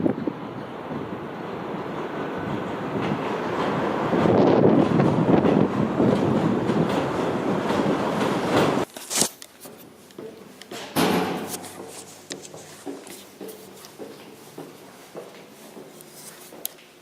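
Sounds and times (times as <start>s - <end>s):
subway train running: 0.0s - 8.9s
clatter and knocks: 3.0s - 8.9s.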